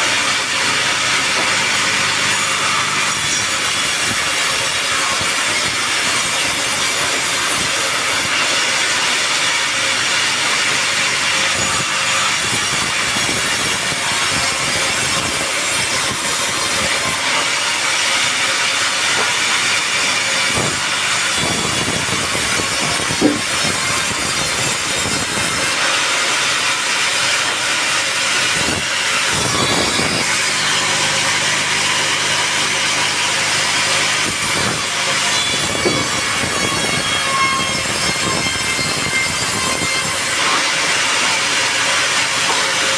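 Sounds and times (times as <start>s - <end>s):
band saw cutting log: 0.0s - 42.9s.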